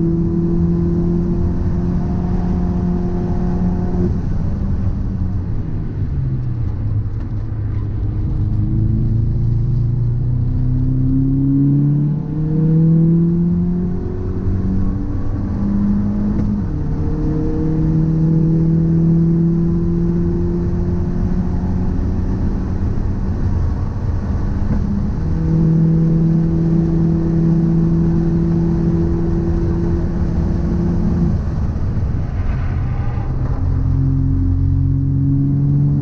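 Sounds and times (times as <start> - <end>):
car driving on road: 0.0 - 36.0
low rumble: 2.8 - 11.6, 22.5 - 36.0.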